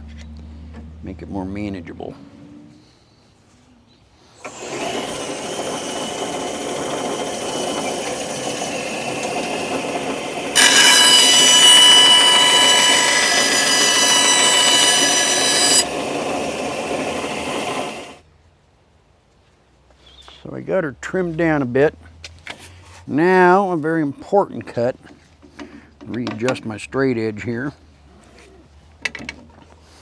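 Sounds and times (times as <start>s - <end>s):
bandsaw cutting with a whine: 4.4s - 18.2s
bandsaw running: 4.4s - 18.2s.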